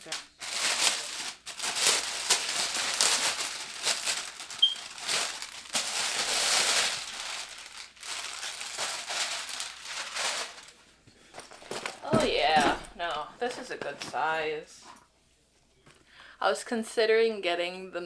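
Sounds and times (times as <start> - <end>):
packaging crinkling and rustling: 0.0 - 14.3.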